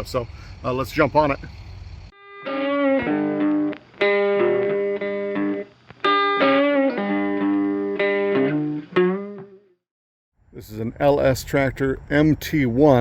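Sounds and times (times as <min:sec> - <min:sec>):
distorted electric guitar chords: 0:02.2 - 0:09.7.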